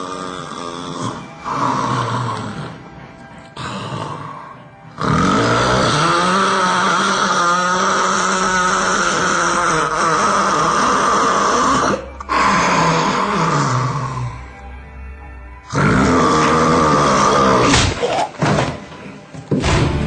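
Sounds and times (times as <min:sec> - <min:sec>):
loud snoring: 0:00.0 - 0:02.9, 0:03.6 - 0:14.5, 0:15.6 - 0:17.7.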